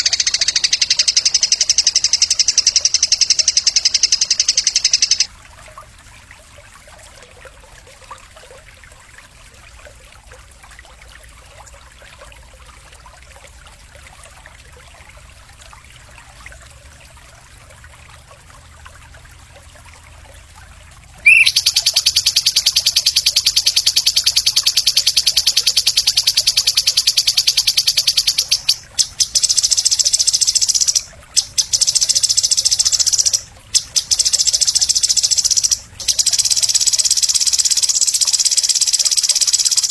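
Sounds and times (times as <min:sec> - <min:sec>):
weak high bird calls: 0:00.0 - 0:05.3, 0:21.2 - 0:39.9
loud rapid buzzing trill: 0:21.5 - 0:39.9.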